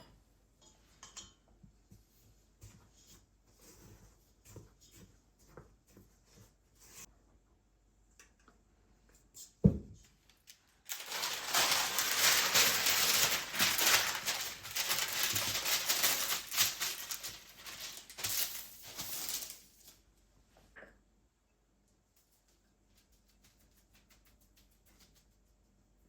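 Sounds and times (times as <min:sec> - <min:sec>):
dry material crackling and rustling: 0:10.4 - 0:20.0.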